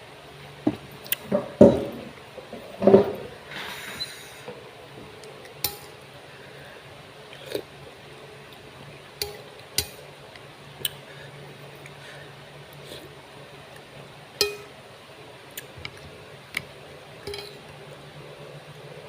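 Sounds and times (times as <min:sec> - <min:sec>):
utensils clinking on dishware: 0:17.3 - 0:17.6.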